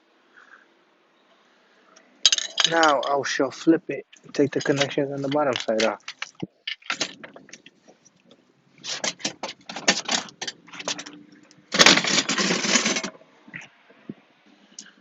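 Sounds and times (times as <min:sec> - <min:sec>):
hard plastic clicking and rattling: 0:04.2 - 0:07.7.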